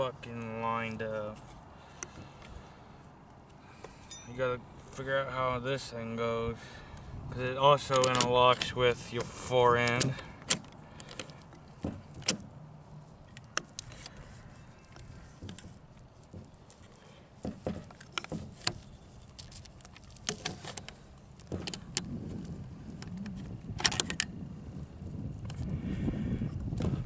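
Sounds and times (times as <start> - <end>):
metallic clicks of gun parts: 7.8 - 12.5, 13.2 - 14.2.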